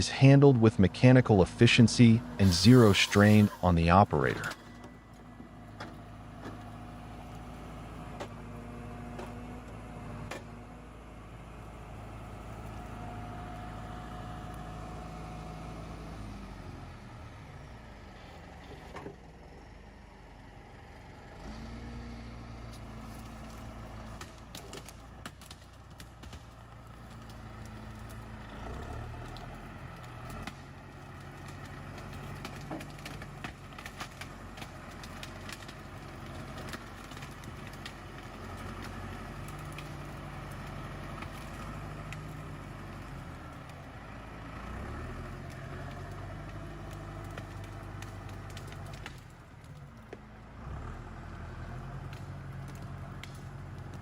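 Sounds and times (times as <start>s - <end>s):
tractor diesel engine running: 0.0s - 54.0s.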